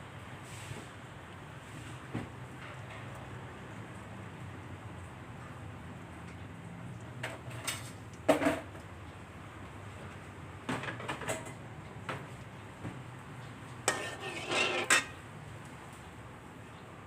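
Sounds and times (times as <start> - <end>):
metal cookware clattering: 13.9 - 15.2.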